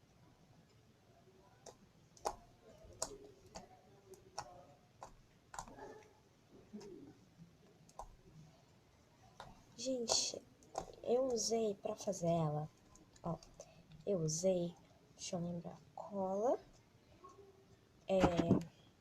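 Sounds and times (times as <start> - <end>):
slime squelching and clicking: 1.5 - 6.1, 6.7 - 8.2, 9.4 - 11.7, 12.7 - 14.1.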